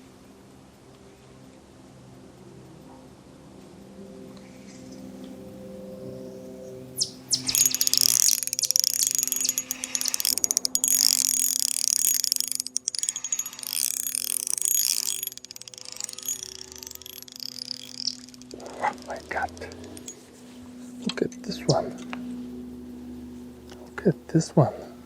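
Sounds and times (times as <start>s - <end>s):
fishing reel drag clicking: 7.3s - 20.2s.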